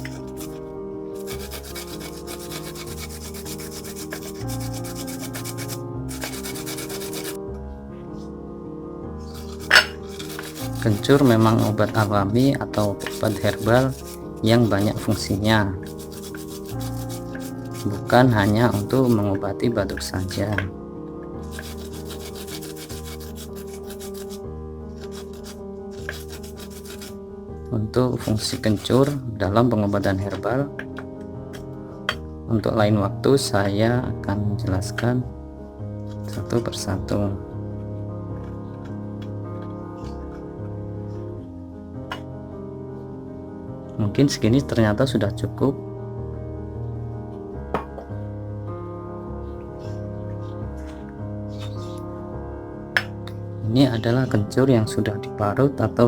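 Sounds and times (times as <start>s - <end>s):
root rasping on wooden grater: 0.0s - 0.6s, 1.2s - 7.4s, 9.3s - 19.4s, 21.4s - 24.4s, 25.0s - 27.2s, 28.2s - 29.2s
background music sustained notes: 0.0s - 56.0s.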